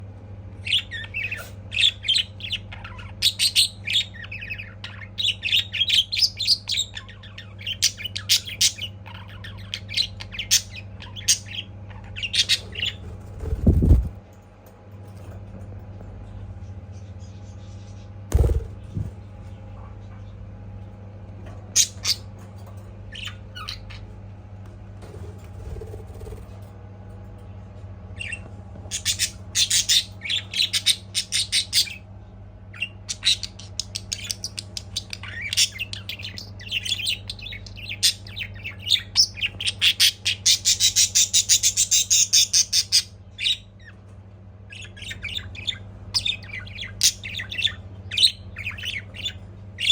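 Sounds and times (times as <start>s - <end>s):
budgerigar chirping and squawking: 0.6s - 14.1s, 21.7s - 22.4s, 28.2s - 32.0s
low hum: 11.0s - 30.8s.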